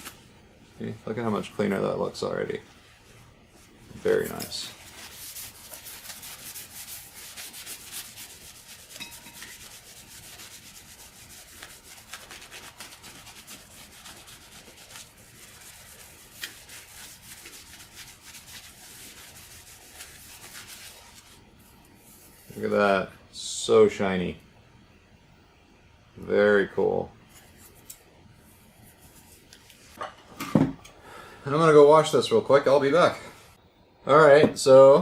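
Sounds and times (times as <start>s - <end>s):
paper towel scrubbing a surface: 0.8s - 22.8s, 28.4s - 30.0s.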